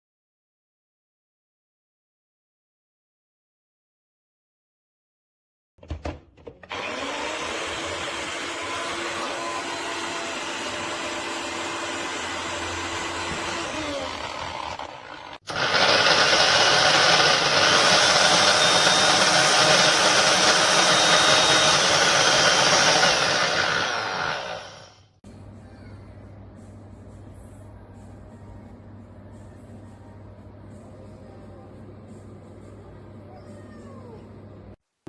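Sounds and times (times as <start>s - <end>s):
blender motor running: 6.7s - 25.1s.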